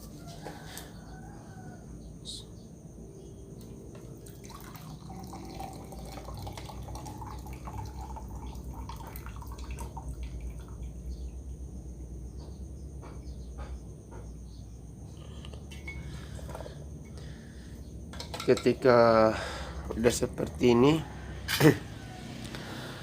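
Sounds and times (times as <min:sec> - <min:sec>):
water trickling and dripping: 0:03.6 - 0:11.2
water pouring through strainer: 0:04.2 - 0:10.3.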